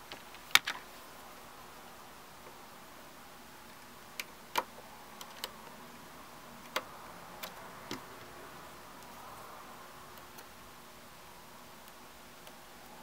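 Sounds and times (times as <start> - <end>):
small tools clicking on phone parts: 0.0 - 0.9, 3.7 - 5.8, 6.6 - 8.1.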